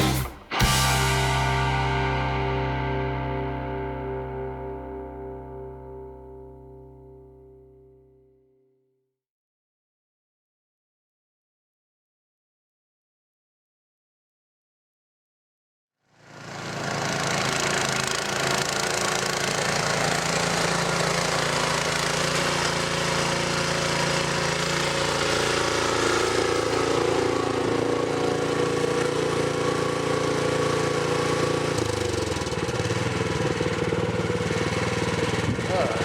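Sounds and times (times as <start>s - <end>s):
snowblower engine and auger: 0.0s - 7.2s, 16.2s - 36.0s.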